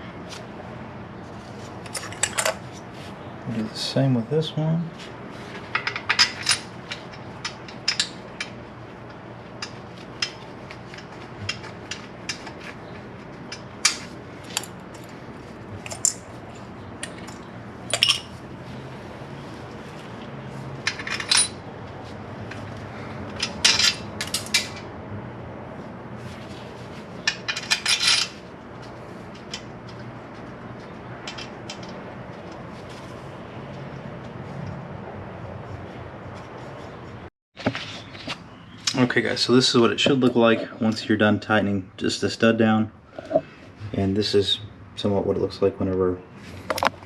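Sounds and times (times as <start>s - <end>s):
metal studs clinking and scraping: 1.8s - 2.7s, 5.5s - 8.6s, 15.8s - 18.3s, 20.8s - 21.6s, 23.4s - 24.8s, 27.2s - 28.4s.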